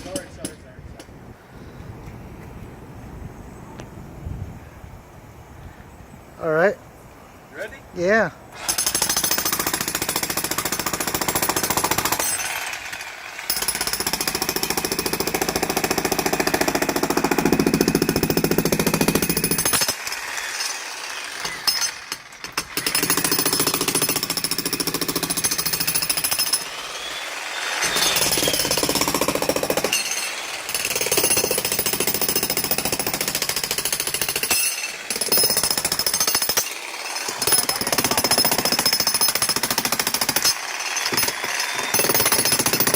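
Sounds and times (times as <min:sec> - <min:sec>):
jackhammer breaking concrete: 0:08.6 - 0:42.9.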